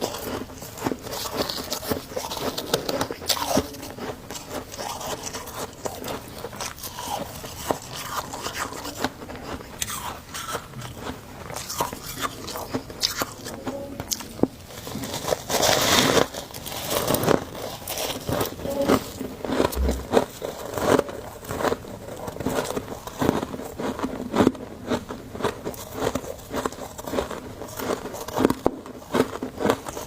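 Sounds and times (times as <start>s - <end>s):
crunching frost chewing: 0.0s - 30.0s.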